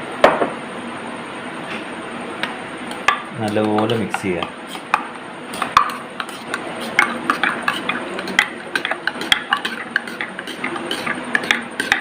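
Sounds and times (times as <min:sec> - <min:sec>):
spoon mashing porridge: 0:02.4 - 0:12.0
spoon clinking and scraping bowl: 0:02.9 - 0:12.0.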